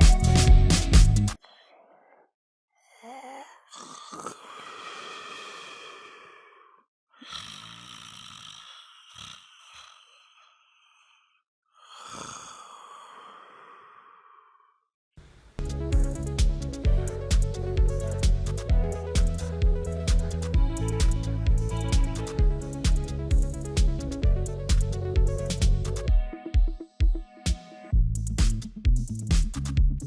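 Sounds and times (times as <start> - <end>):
dog snoring with whistling tone: 7.3 - 8.6.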